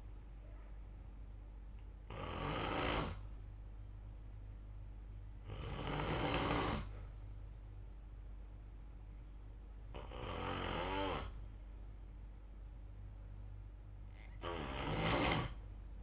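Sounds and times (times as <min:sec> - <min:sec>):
person snoring: 0:02.1 - 0:03.3, 0:05.5 - 0:07.0, 0:09.9 - 0:11.4, 0:14.2 - 0:15.6.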